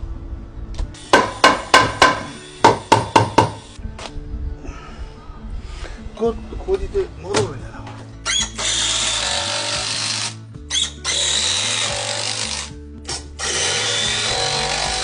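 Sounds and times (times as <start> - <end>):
power drill running: 8.3 - 12.7, 13.4 - 15.0.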